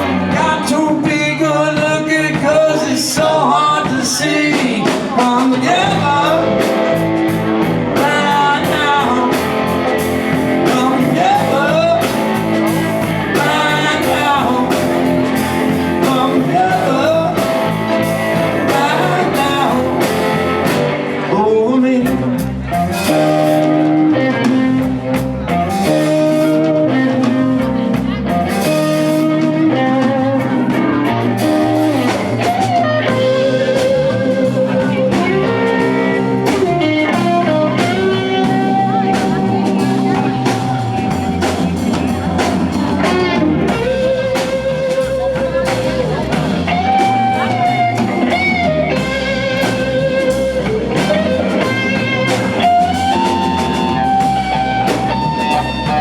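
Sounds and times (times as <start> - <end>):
live blues-rock band: 0.0 - 56.0
electric guitar held notes: 22.2 - 56.0.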